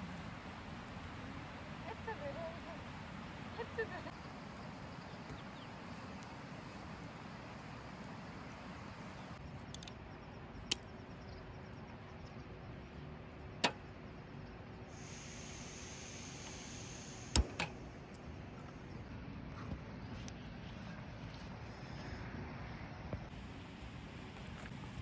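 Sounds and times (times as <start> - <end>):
sharp clicks: 17.2 - 17.8.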